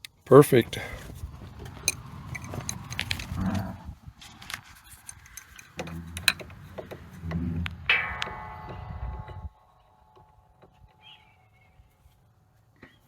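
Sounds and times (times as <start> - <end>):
scraping rumbles: 0.5 - 9.6
tools knocking and clicking: 1.7 - 3.4, 4.9 - 7.5
ringing metallic clang: 5.1 - 11.9.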